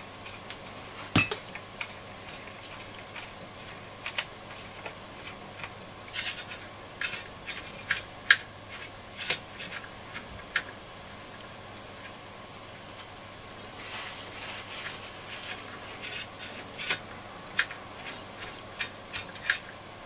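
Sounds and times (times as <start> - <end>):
small tools clicking and clinking: 5.6 - 8.4, 15.4 - 19.7.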